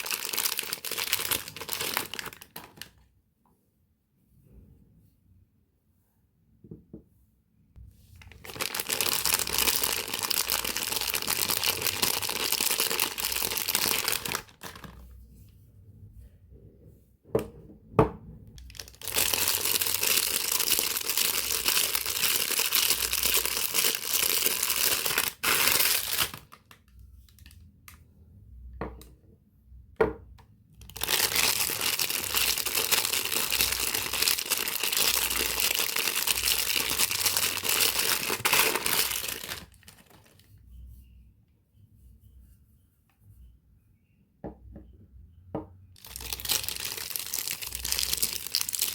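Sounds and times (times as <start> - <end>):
wrappers crinkling and tearing: 0.0 - 3.0, 8.2 - 15.0, 18.7 - 27.6, 30.8 - 40.5, 46.0 - 48.9.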